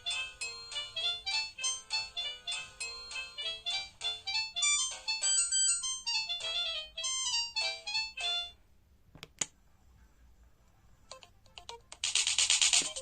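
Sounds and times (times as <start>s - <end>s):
phone ringtone melody: 0.0s - 8.6s.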